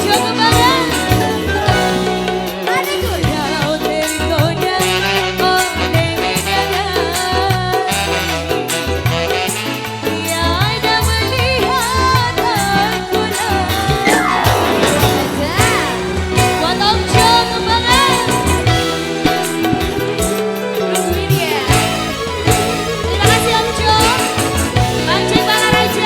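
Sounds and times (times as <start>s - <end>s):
band instrumental backing: 0.0s - 26.0s
steady drum beat: 0.0s - 26.0s
woman singing wavering notes: 12.6s - 20.1s.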